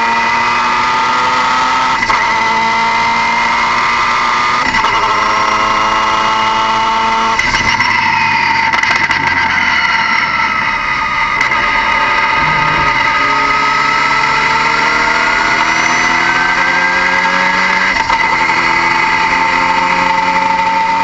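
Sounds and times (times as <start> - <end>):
car engine running: 4.8 - 20.6
steady high whine: 10.3 - 16.7.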